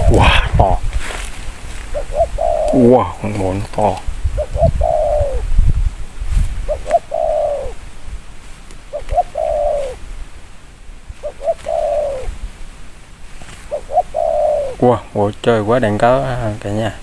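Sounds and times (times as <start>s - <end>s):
dove cooing: 0.0s - 5.7s, 6.6s - 8.0s, 8.8s - 10.2s, 11.1s - 12.5s, 13.4s - 17.0s
low rumbling noise: 0.0s - 8.4s.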